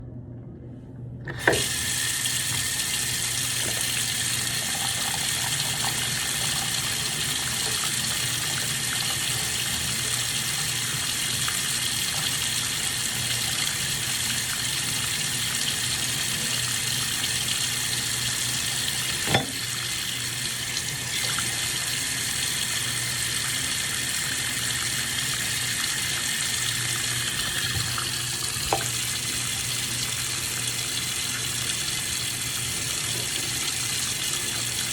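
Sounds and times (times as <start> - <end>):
water running from tap: 1.3 - 34.9.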